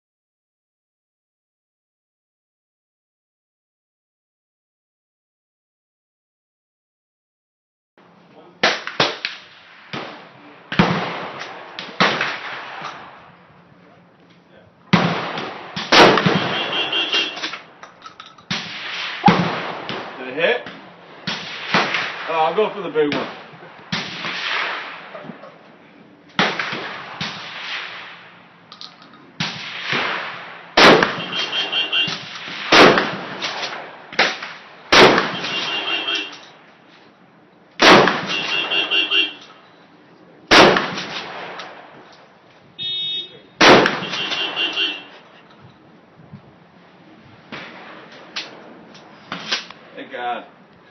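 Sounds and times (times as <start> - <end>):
shotgun firing: 8.6 - 13.3, 14.9 - 17.7, 18.5 - 25.2, 26.4 - 28.4, 29.4 - 36.3, 37.8 - 38.9, 40.5 - 42.0, 43.6 - 45.0
sharp cracks: 8.6 - 13.4, 14.9 - 25.4, 26.3 - 36.8, 37.8 - 39.6, 40.5 - 42.3, 43.6 - 45.2, 47.5 - 50.8.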